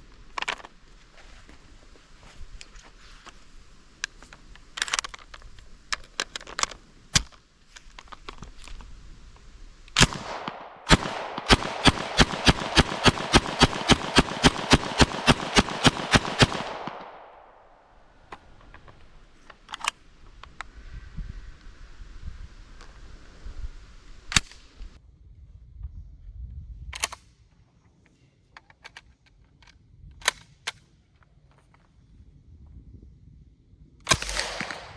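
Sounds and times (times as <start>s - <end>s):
submachine gun firing rapidly: 10.0s - 17.3s, 34.1s - 34.9s
gunshot echo: 10.0s - 17.8s, 34.1s - 34.9s.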